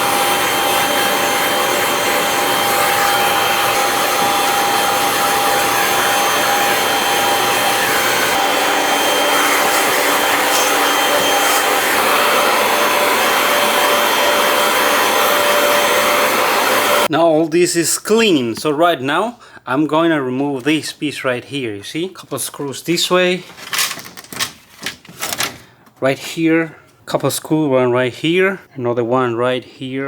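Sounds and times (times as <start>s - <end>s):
vacuum cleaner running: 0.0s - 17.1s.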